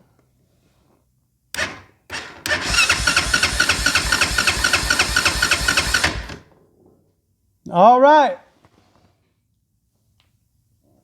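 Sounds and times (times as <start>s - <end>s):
electric starter cranking engine: 1.6s - 6.5s.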